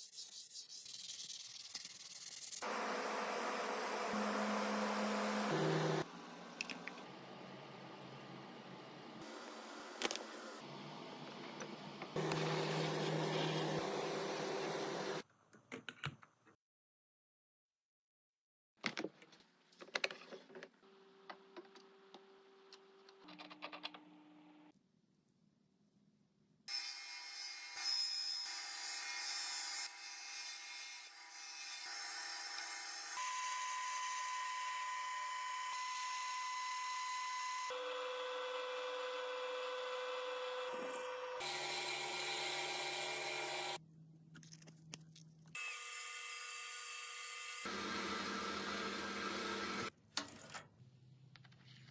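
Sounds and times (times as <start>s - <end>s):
power tool whirring: 2.6s - 6.1s, 12.2s - 15.2s, 32.6s - 43.8s, 45.6s - 49.9s.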